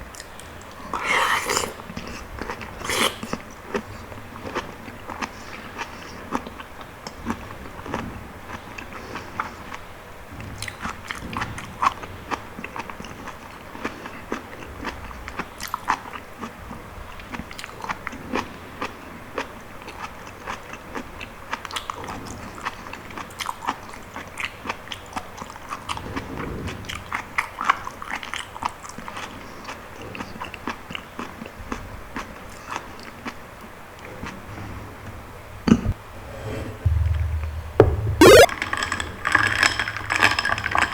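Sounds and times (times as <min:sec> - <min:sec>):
chewing sticky fruit: 0:00.0 - 0:09.8, 0:27.4 - 0:34.5.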